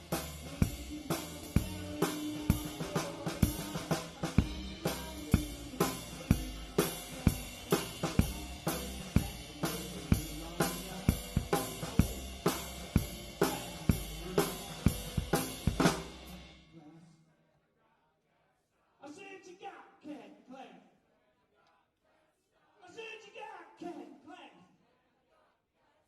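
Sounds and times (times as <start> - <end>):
live rock band: 0.0 - 16.4
cymbals and hi-hat: 0.0 - 16.7.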